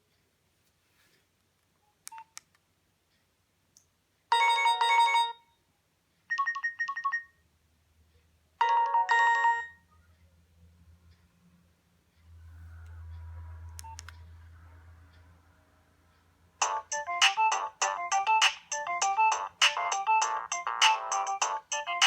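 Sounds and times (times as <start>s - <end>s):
phone ringtone electronic tones: 4.3s - 5.4s, 6.3s - 7.4s, 8.6s - 9.8s, 16.6s - 22.0s.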